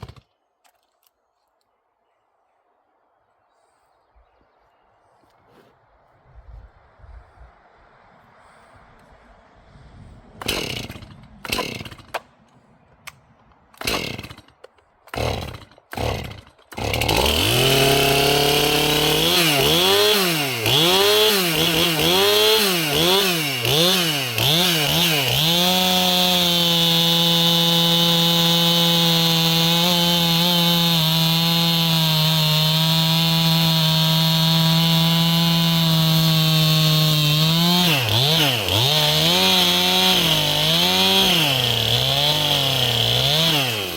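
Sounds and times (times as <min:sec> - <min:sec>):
chainsaw pull-starting: 0:00.0 - 0:01.0, 0:10.4 - 0:12.3, 0:13.7 - 0:43.9
chainsaw engine revving: 0:10.4 - 0:12.2, 0:13.8 - 0:43.9.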